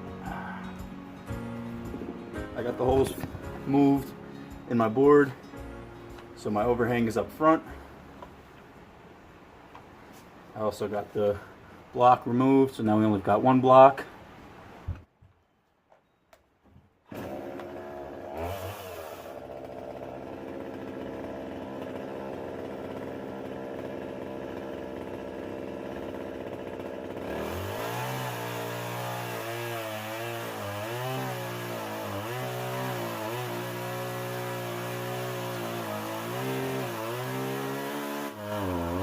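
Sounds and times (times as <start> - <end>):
chainsaw cutting log: 0.0 - 5.6, 17.1 - 39.0.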